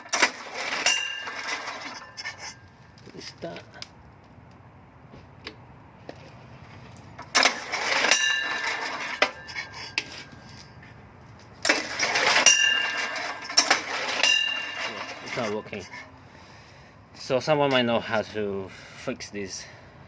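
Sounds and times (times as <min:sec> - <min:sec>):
electric starter cranking engine: 0:00.0 - 0:02.3, 0:07.2 - 0:10.2, 0:11.6 - 0:15.6.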